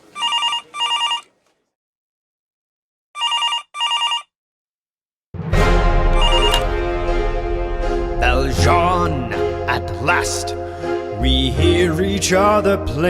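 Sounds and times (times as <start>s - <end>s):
telephone double ring: 0.2s - 1.3s, 3.2s - 4.3s, 6.2s - 6.7s
loud music: 5.4s - 13.0s.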